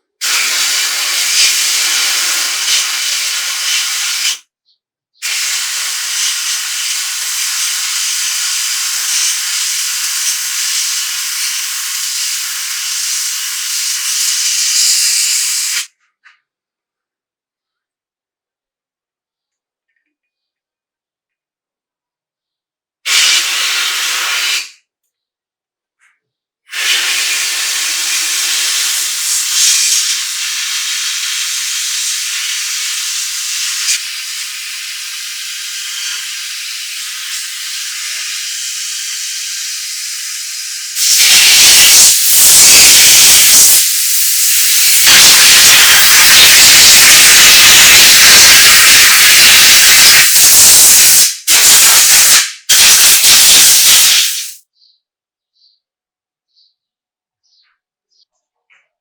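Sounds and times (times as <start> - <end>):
hissing spray: 0.1 - 4.4, 5.2 - 15.9, 23.1 - 24.8, 26.7 - 54.6.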